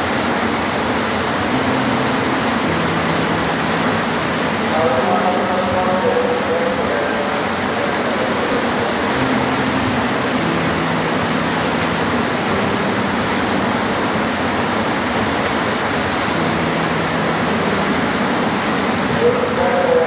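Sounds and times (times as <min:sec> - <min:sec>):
heavy rain: 0:00.0 - 0:20.0.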